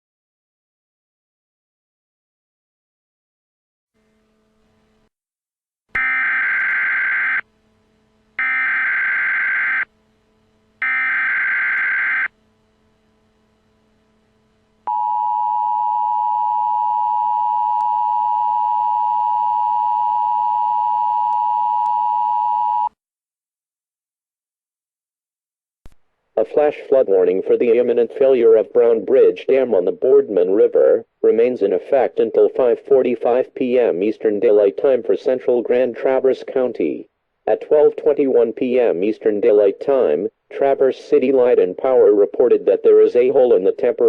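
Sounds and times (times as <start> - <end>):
two-tone attention signal: 6.0 - 7.4.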